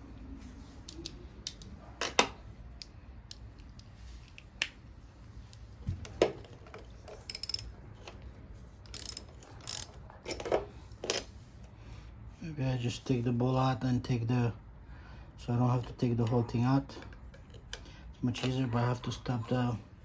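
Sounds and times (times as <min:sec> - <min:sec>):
hand tools and parts clicking: 0:00.8 - 0:04.8, 0:05.5 - 0:08.2, 0:08.8 - 0:11.3.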